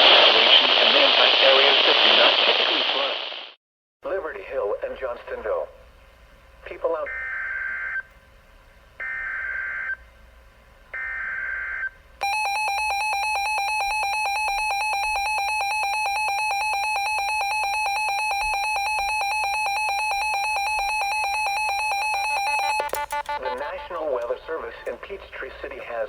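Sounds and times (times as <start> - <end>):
two-tone attention signal: 12.2 - 23.7.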